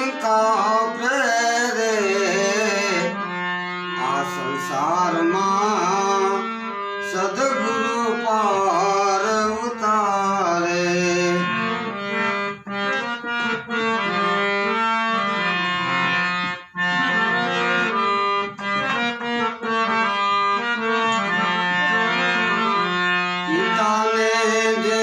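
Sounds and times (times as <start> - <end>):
harmonium melody: 0.0 - 25.0.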